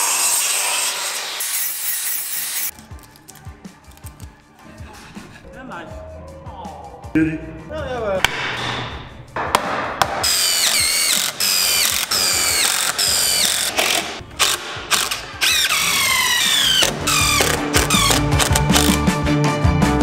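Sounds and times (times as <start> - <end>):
power drill whining: 10.3 - 18.9
sharp clicks: 16.8 - 19.0.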